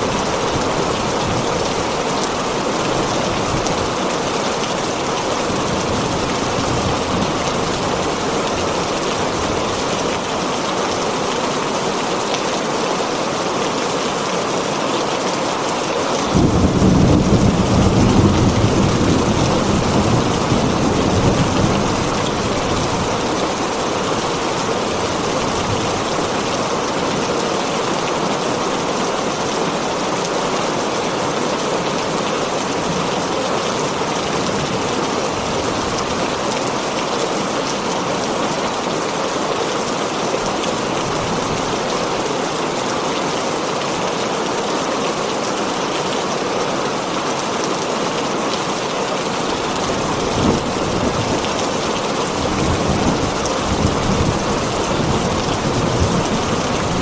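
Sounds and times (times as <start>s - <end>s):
heavy rain on a tin roof: 0.0s - 57.0s
thunder rumble: 16.3s - 24.6s, 49.5s - 57.0s.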